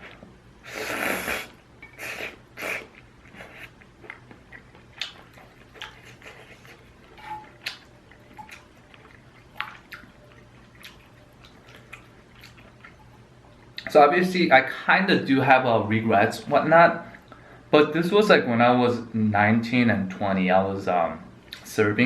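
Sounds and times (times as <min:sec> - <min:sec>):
mouth noises while eating: 0:00.0 - 0:13.9
quiet chewing with wet clicks: 0:02.8 - 0:13.9, 0:21.4 - 0:21.7.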